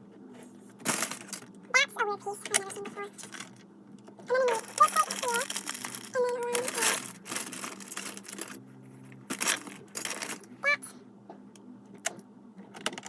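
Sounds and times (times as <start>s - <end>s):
plastic pieces clattering: 0.8s - 1.6s, 2.4s - 3.6s, 4.3s - 8.6s, 9.3s - 10.8s.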